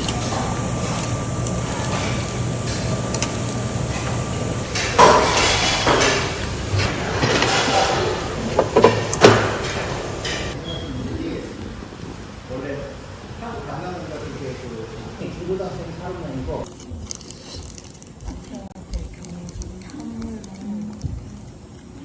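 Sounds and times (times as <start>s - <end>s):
steady hiss: 0.0s - 10.6s
sharp knocks and clatters: 1.1s - 7.7s.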